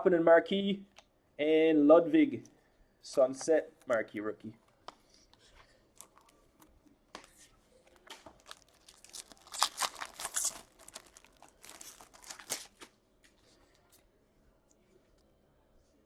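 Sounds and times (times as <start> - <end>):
card pack wrapper tearing: 8.3 - 12.8.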